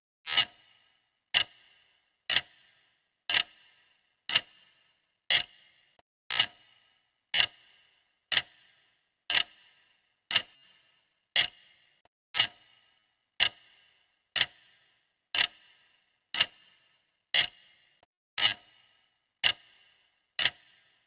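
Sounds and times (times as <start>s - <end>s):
clock ticking: 0.3s - 0.6s, 1.3s - 3.7s, 4.3s - 4.6s, 5.3s - 6.6s, 7.3s - 7.7s, 8.3s - 8.7s, 9.3s - 9.7s, 10.3s - 10.6s, 11.4s - 11.7s, 12.4s - 12.7s, 13.4s - 13.8s, 14.4s - 14.8s, 15.4s - 15.7s, 16.4s - 16.7s, 17.4s - 17.7s, 19.4s - 19.8s, 20.4s - 20.8s.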